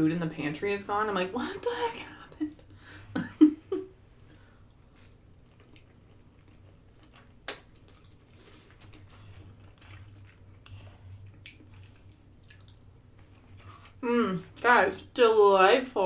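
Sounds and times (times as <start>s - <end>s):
person chewing food: 4.2s - 14.0s.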